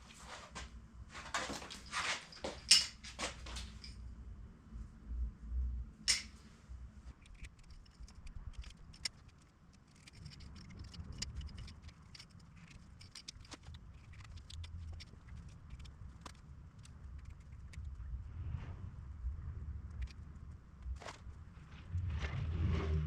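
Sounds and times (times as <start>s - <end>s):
hand tools clicking and snipping: 1.6s - 3.9s, 6.1s - 6.4s, 7.2s - 17.8s.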